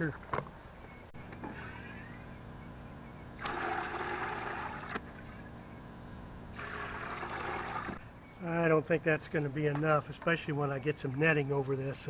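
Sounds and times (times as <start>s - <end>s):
water sloshing in a bucket: 6.6s - 8.0s.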